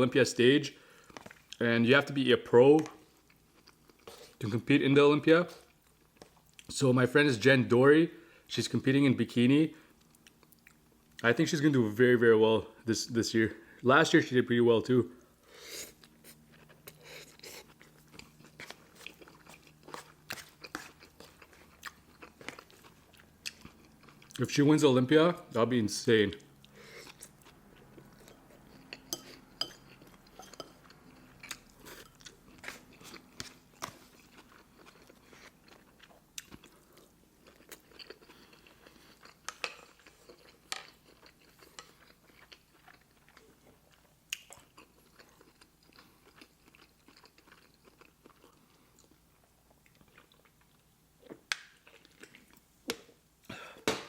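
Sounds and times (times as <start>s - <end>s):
person chewing food: 0.8s - 1.6s, 2.8s - 4.4s, 15.7s - 24.4s, 26.4s - 53.9s
food crunching: 2.8s - 4.4s, 15.9s - 24.4s, 26.4s - 52.7s.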